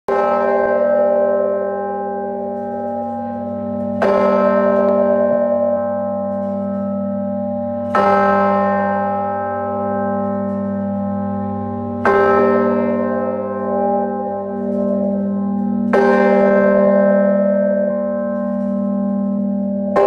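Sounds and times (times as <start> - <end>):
large bell tolling: 0.1 - 20.0.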